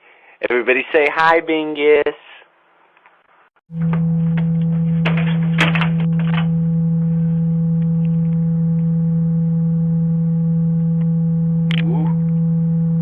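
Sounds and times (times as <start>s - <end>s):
low electronic hum: 3.7s - 13.0s.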